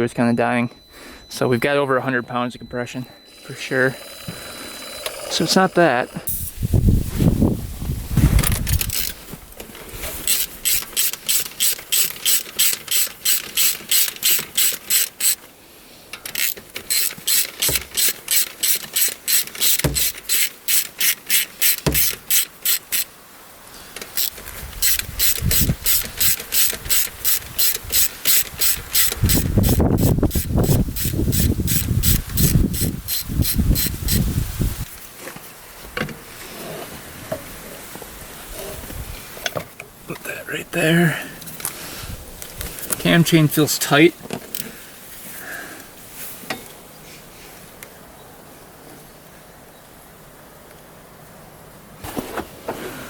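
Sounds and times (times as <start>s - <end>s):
ratchet wrench clicking: 10.2s - 15.4s, 16.2s - 23.1s, 24.1s - 34.2s.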